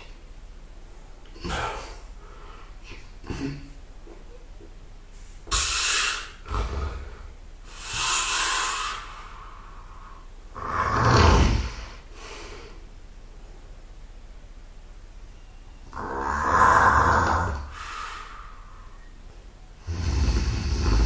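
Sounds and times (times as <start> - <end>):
man snoring: 5.5 - 9.1, 10.6 - 12.0, 15.9 - 17.8, 19.8 - 21.0.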